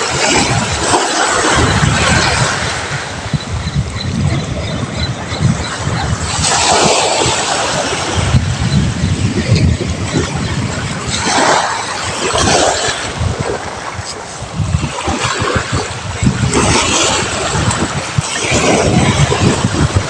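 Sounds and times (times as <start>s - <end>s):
surf washing on shore: 0.0s - 20.0s
wind buffeting microphone: 0.0s - 20.0s.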